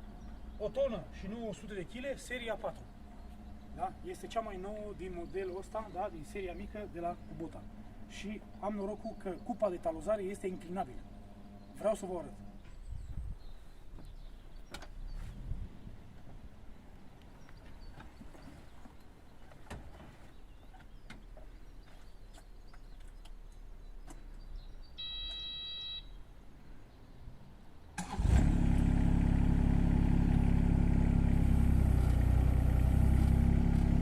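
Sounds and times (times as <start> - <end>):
warning beep: 25.0 - 26.2
diesel engine starting and idling: 28.0 - 34.0.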